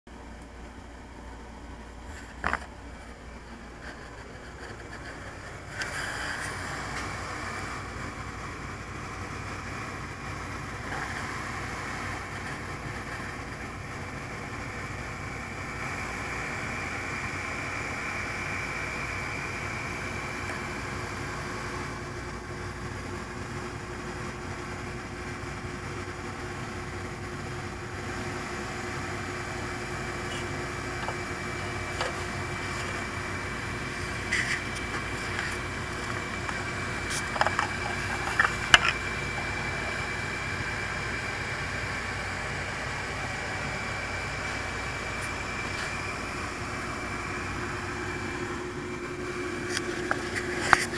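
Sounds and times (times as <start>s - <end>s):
quadcopter motors whining: 25.0s - 50.9s.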